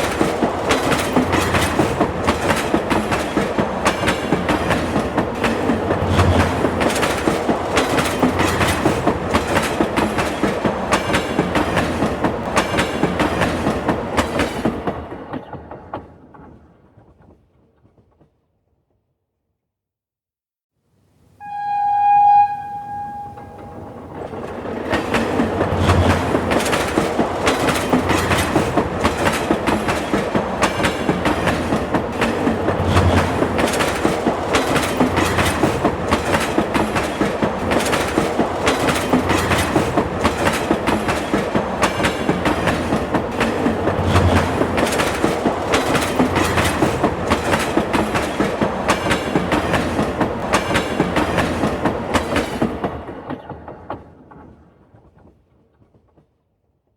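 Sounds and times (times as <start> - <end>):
train wheels clickety-clack: 0.0 - 18.4, 24.2 - 56.6
train horn blast: 21.4 - 24.4.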